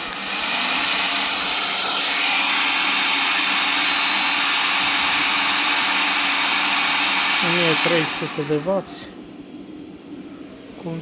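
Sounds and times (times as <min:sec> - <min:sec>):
heat gun blowing air: 0:00.0 - 0:08.8
steady low hum: 0:00.0 - 0:11.0.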